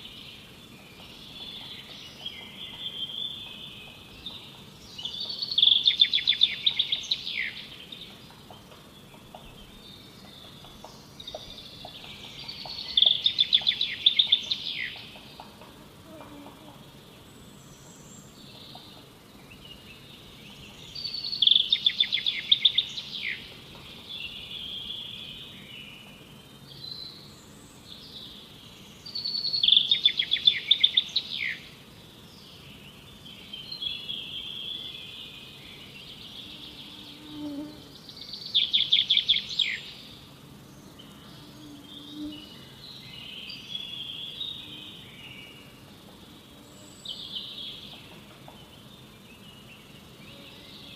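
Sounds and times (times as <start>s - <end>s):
faint background hiss: 0.0s - 50.9s
other birds calling softly: 0.0s - 50.9s.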